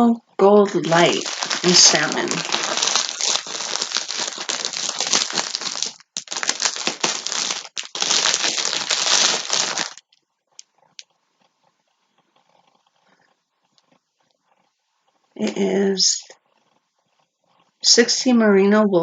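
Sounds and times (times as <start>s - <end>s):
plastic packaging crinkling: 0.8s - 10.0s.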